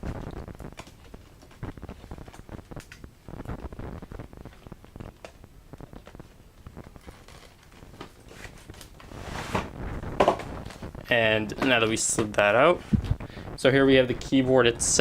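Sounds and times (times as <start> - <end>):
cardboard packaging rustling: 0.0 - 13.2
box scraping out of sleeve: 8.3 - 9.8.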